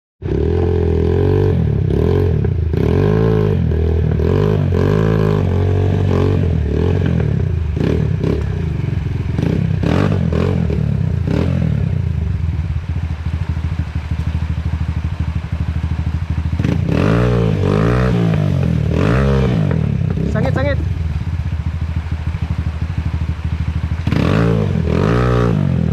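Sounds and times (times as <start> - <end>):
dirt bike engine revving: 0.2 - 12.6, 13.3 - 21.8, 22.4 - 25.9.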